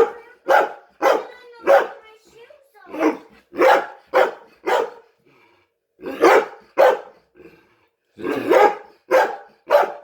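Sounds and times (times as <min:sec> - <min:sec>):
dog barking: 0:00.0 - 0:02.1, 0:02.9 - 0:05.1, 0:06.0 - 0:07.2, 0:08.2 - 0:10.0.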